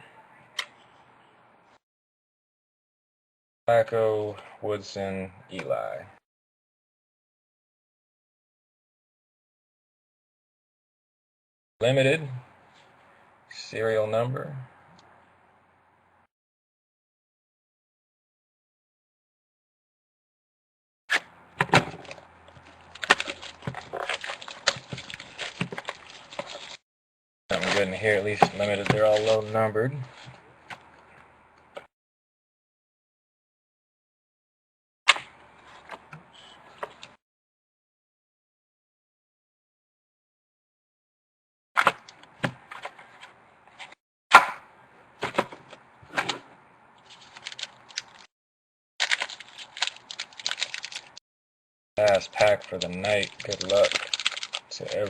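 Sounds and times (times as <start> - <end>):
cards and packaging handled: 21.1 - 26.8, 27.5 - 31.1, 47.0 - 48.3, 49.0 - 51.2, 52.0 - 55.0
cards clacking and tapping: 27.6 - 29.5, 52.0 - 55.0.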